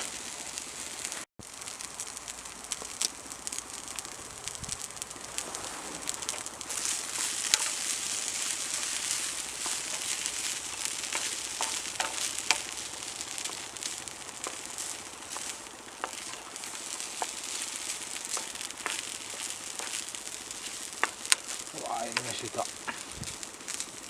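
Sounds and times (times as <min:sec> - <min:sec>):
food sizzling in frying pan: 0:00.0 - 0:24.0.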